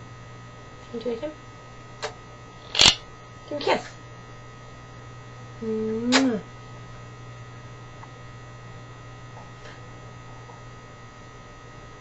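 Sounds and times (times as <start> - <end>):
steady electrical hum: 0.0 - 12.0
kissing sound: 2.6 - 3.0.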